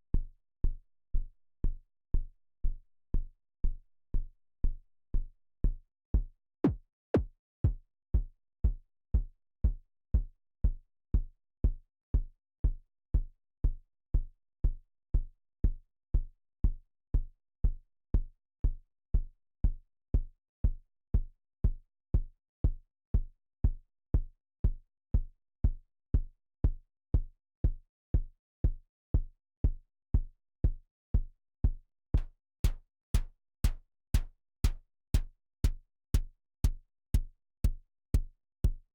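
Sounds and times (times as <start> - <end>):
synthesized kick drum thumps: 6.2 - 11.3, 32.2 - 38.8.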